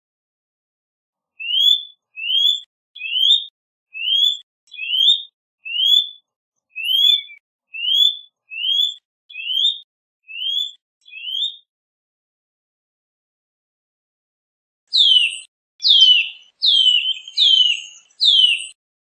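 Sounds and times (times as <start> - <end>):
bird whistling rising note: 15.0 - 18.7.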